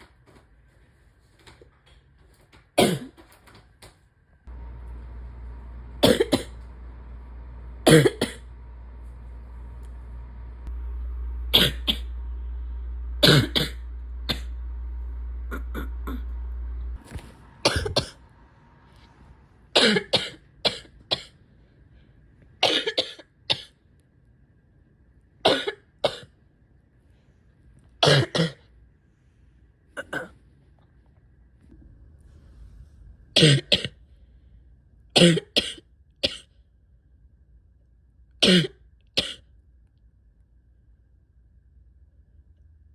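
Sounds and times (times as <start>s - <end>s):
steady low hum: 0.0s - 42.9s
person coughing: 2.8s - 3.2s, 6.0s - 6.6s, 7.8s - 8.4s, 11.5s - 12.1s, 13.2s - 14.5s, 15.5s - 16.3s, 17.6s - 18.2s, 19.8s - 21.4s, 22.6s - 23.8s, 28.0s - 28.7s, 30.0s - 30.4s, 33.4s - 34.0s, 35.2s - 36.5s, 38.4s - 39.5s.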